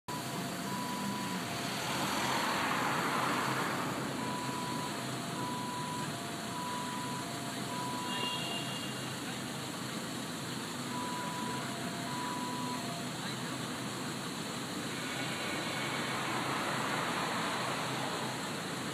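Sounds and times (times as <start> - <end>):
traffic noise: 0.0 - 18.9
two-tone siren: 0.1 - 2.5, 4.2 - 8.9, 10.9 - 13.2
vehicle passing: 0.7 - 4.8, 14.9 - 18.7.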